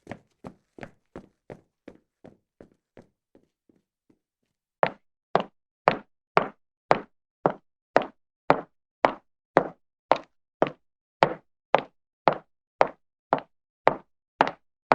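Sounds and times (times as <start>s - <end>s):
footsteps: 0.0s - 3.8s.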